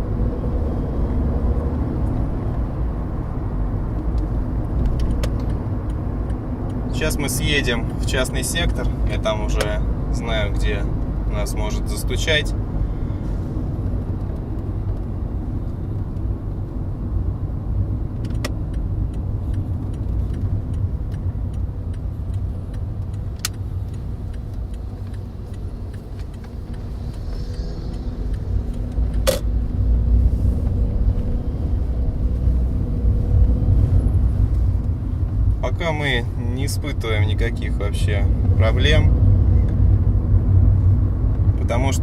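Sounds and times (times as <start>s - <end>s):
car road and engine rumble: 0.0s - 42.0s
sharp clicks: 18.2s - 29.8s.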